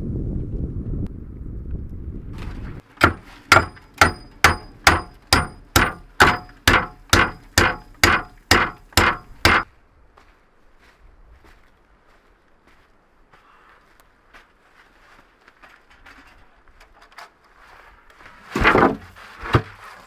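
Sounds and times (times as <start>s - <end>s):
hammer blows with metallic ring: 3.1s - 9.7s.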